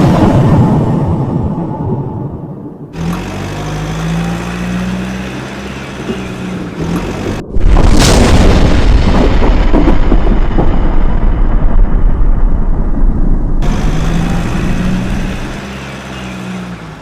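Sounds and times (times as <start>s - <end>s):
loud boom with heavy rumble: 7.4s - 15.6s.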